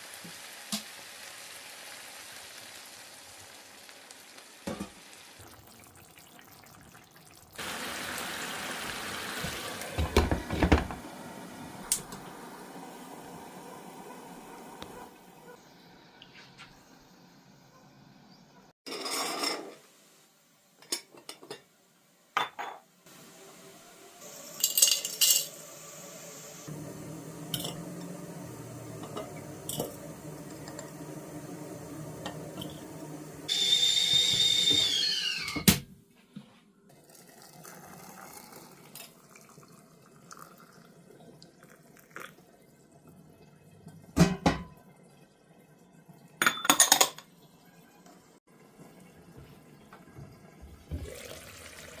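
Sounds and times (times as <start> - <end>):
water being poured: 5.4 - 10.7, 36.9 - 46.5, 50.4 - 52.0
crockery and cutlery clinking: 24.6 - 25.6, 46.4 - 47.3.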